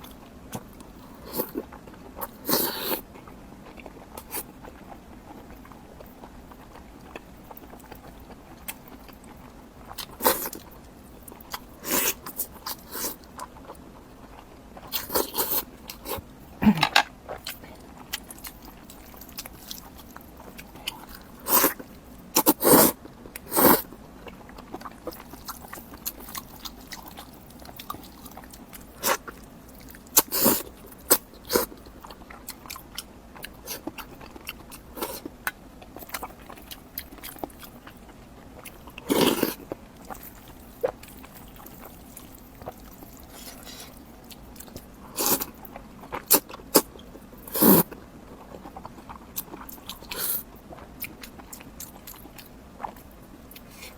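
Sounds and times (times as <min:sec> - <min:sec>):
crunching bites and chewing: 0:16.8 - 0:53.8.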